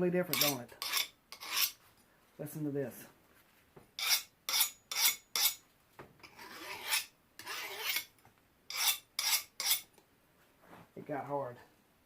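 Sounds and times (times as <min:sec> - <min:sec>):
file scraping steel blade: 0:00.3 - 0:01.8, 0:04.0 - 0:05.6, 0:06.2 - 0:08.1, 0:08.7 - 0:09.9.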